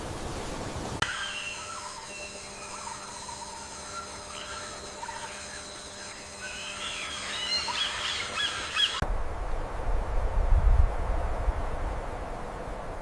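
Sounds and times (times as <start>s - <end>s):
birds chirping: 1.0s - 9.0s.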